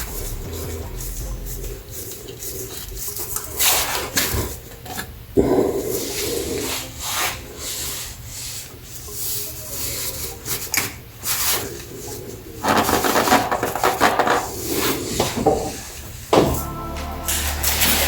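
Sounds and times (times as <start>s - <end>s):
rubbing and scraping: 11.3s - 16.6s.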